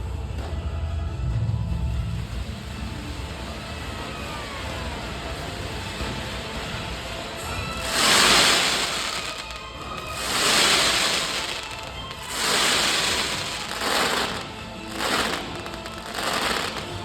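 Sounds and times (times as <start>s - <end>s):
fireworks hissing bursts: 2.2s - 17.0s.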